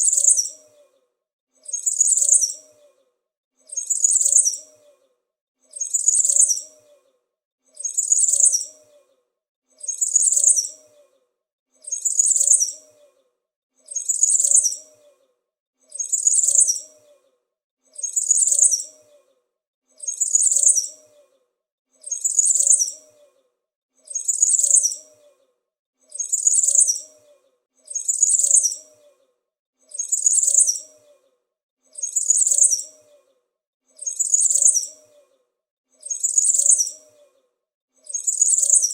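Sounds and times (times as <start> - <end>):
small bird chirping: 0.0 - 1.0, 1.6 - 3.0, 3.7 - 5.1, 5.7 - 7.1, 7.7 - 9.2, 9.8 - 11.2, 11.8 - 13.2, 13.9 - 15.2, 15.9 - 17.3, 17.9 - 19.3, 20.0 - 21.4, 22.0 - 23.4, 24.0 - 25.5, 26.1 - 29.2, 29.9 - 31.3, 31.9 - 33.3, 33.9 - 35.4, 36.0 - 37.4, 38.0 - 38.9.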